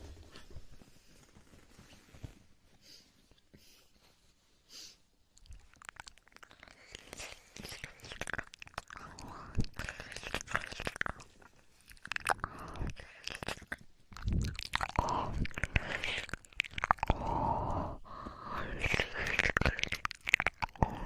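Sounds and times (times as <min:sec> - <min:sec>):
wet mouth clicks and smacks: 0:05.4 - 0:21.0.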